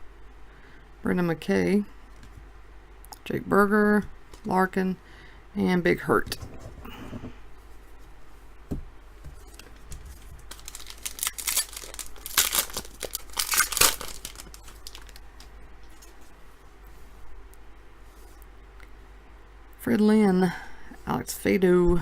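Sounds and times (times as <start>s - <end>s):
wrapper crinkling and tearing: 9.4s - 16.2s.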